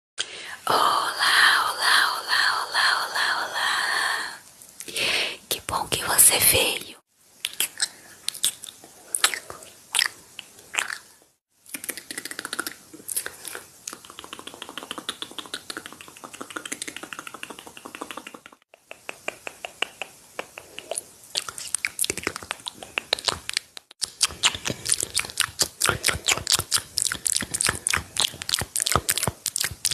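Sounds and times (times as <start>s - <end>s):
wet mouth clicks and smacks: 7.4s - 11.1s, 11.7s - 29.9s.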